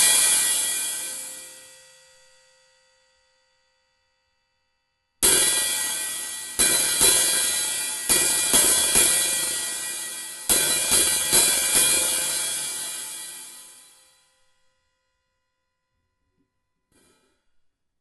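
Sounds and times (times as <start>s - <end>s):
open hi-hat cymbal hits: 0.0s - 3.8s, 5.2s - 14.7s.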